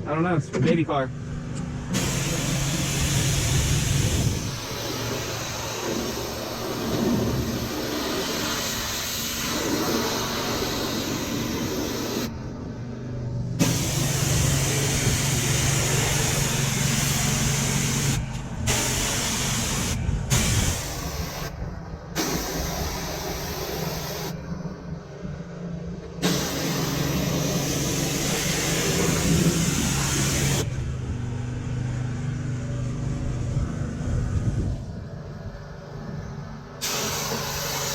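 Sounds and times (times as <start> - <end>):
motor and pump hum: 0.0 - 37.9
pressure washer spraying water: 1.9 - 12.3, 13.6 - 21.6, 22.2 - 24.4, 26.2 - 30.7, 36.8 - 37.9.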